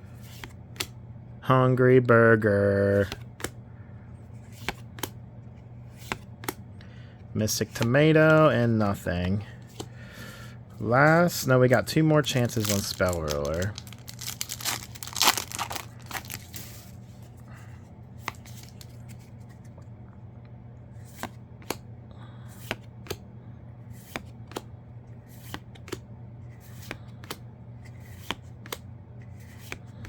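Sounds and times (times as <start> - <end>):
cards snapping: 3.1 - 3.6, 12.4 - 16.6, 24.0 - 24.7.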